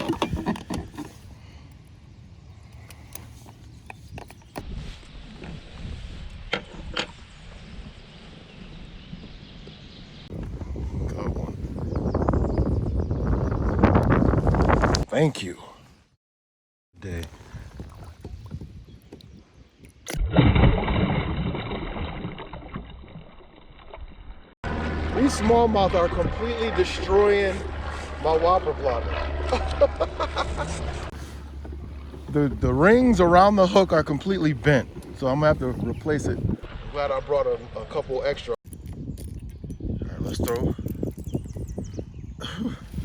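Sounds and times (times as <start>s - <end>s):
water splashing around a kayak: 17.0s - 30.0s, 31.0s - 37.6s.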